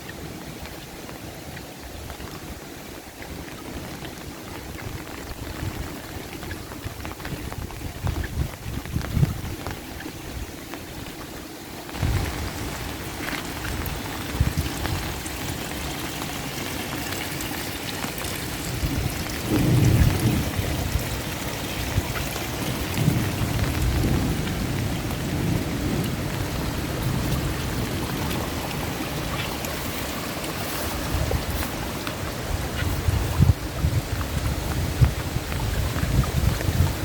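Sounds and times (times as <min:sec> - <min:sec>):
steady rain falling: 0:00.0 - 0:37.0.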